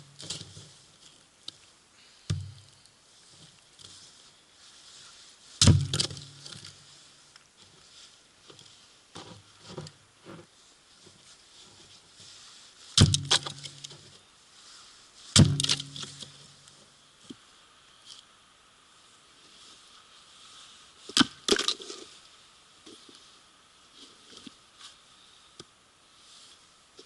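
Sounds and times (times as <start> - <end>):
light clattering of firewood: 0.0 - 14.2, 15.2 - 18.3, 21.0 - 22.2
sharp wooden knocks: 13.0 - 13.7.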